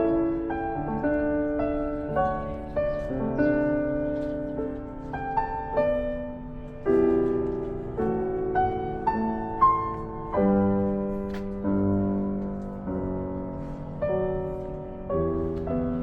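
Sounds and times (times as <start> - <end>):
slow piano piece: 0.0 - 16.0.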